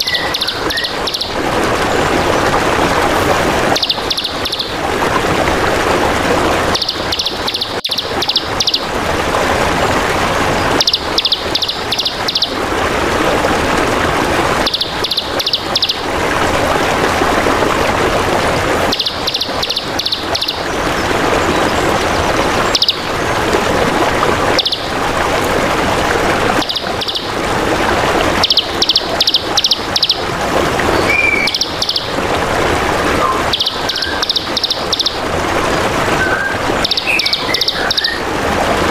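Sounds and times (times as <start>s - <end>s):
songbird chirping: 0.0s - 1.4s, 3.7s - 4.8s, 6.7s - 8.9s, 10.8s - 12.6s, 14.6s - 16.0s, 18.9s - 23.2s, 24.6s - 25.0s, 26.6s - 27.3s, 28.4s - 30.2s, 31.0s - 32.1s, 33.2s - 35.2s, 36.2s - 38.3s
water trickling: 0.0s - 38.9s.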